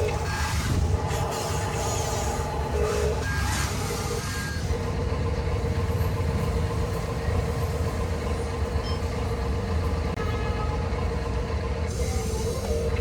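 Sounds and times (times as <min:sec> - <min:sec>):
toy truck motor rumble and whine: 0:00.0 - 0:05.0.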